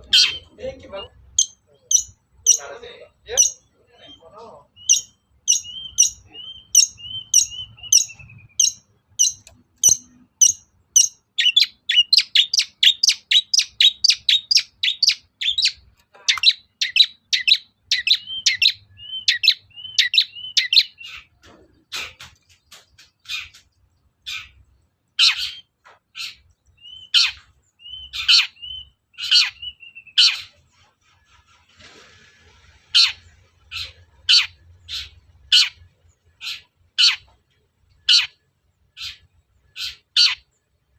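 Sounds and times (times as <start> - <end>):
bird calling harsh notes: 0.0 - 21.3.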